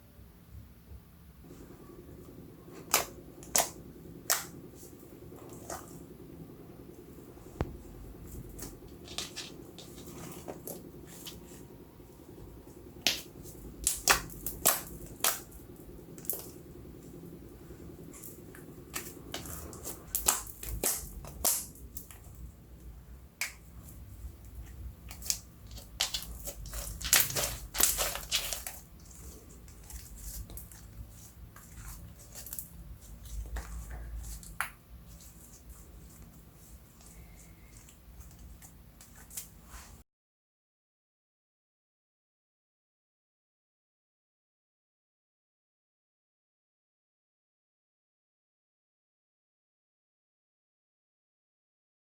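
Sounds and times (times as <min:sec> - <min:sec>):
slime squishing with clicks and pops: 0:02.7 - 0:06.0, 0:13.0 - 0:16.7, 0:18.1 - 0:22.4, 0:23.4 - 0:24.0, 0:25.0 - 0:31.0.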